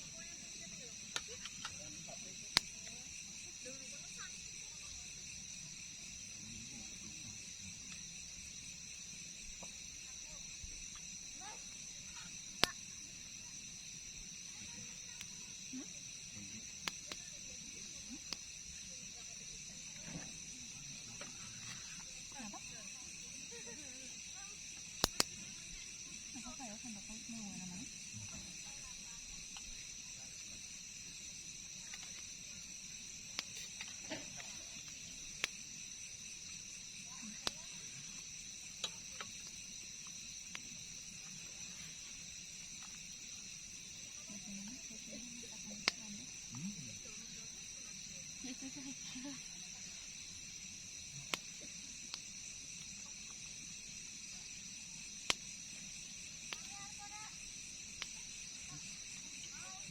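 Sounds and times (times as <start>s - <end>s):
crickets trilling: 0.0s - 59.9s
sharp clicks: 25.0s - 25.4s.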